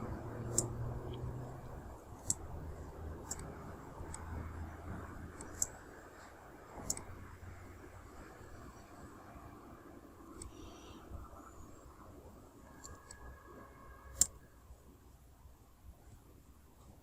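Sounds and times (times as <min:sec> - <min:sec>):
computer mouse clicking: 0:00.4 - 0:01.2, 0:02.2 - 0:02.5, 0:03.2 - 0:04.4, 0:05.3 - 0:05.8, 0:06.8 - 0:07.1, 0:10.3 - 0:10.7, 0:12.7 - 0:13.3, 0:14.1 - 0:14.4.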